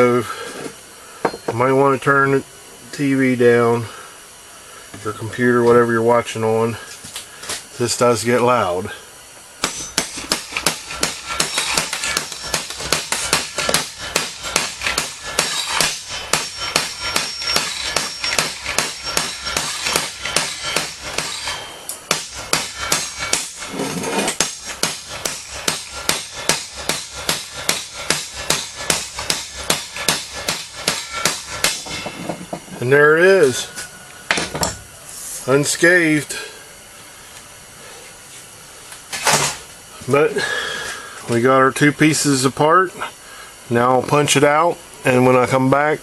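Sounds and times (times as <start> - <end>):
metal being struck: 9.6 - 23.7, 24.3 - 32.2.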